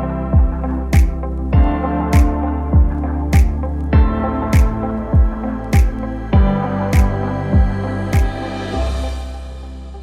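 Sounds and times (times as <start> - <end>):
deep kick drum: 0.0 - 8.4
sharp clap or snare: 1.0 - 1.2, 2.2 - 2.4, 3.4 - 3.6, 4.6 - 4.8, 5.8 - 6.0, 7.0 - 7.2, 8.2 - 8.4.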